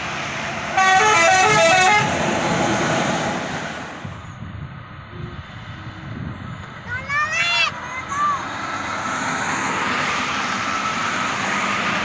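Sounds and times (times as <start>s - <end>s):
road noise: 0.0s - 12.0s
bus musical horn: 0.7s - 2.3s.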